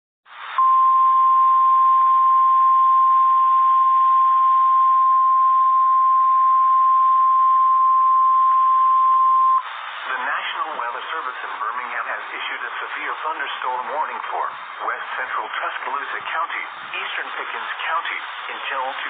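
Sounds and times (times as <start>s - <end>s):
steady alarm tone: 0.6s - 9.6s
faint radio hiss: 5.3s - 19.0s.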